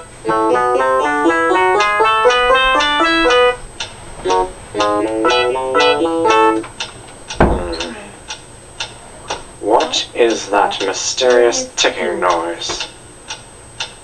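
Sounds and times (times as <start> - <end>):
steady ticking: 0.7 - 14.0
plucked banjo tune: 4.3 - 6.6
loud thump: 7.4 - 7.9.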